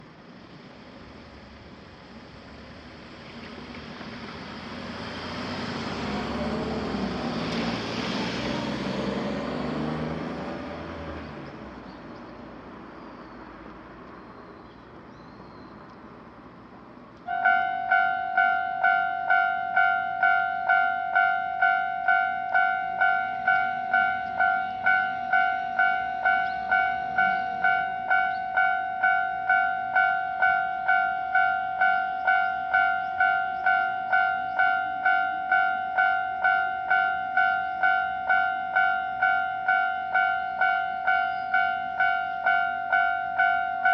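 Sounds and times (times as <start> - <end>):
vehicle passing: 4.0 - 11.8
railroad crossing warning bell: 17.2 - 43.9.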